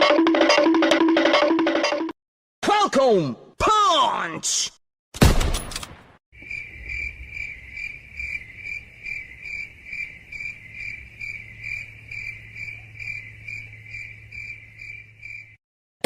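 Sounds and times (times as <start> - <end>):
crickets chirping: 6.4 - 15.6.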